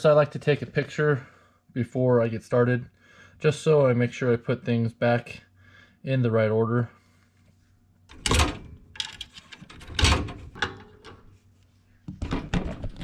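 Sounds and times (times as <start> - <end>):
small clicks and rattles: 8.1 - 11.3.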